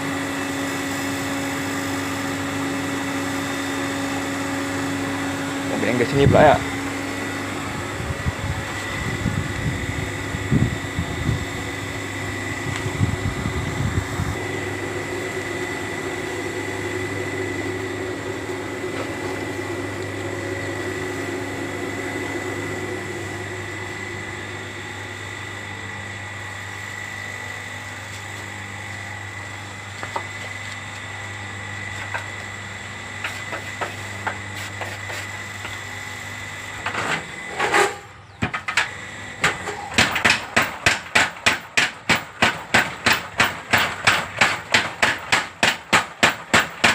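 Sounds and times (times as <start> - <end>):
machine hum: 0.0 - 46.9
power hammer striking: 37.7 - 46.9.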